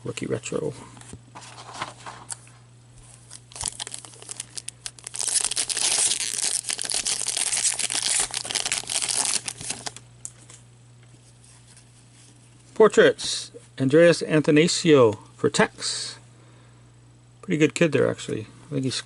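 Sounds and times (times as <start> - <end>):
wrapper crinkling and tearing: 3.2 - 10.0.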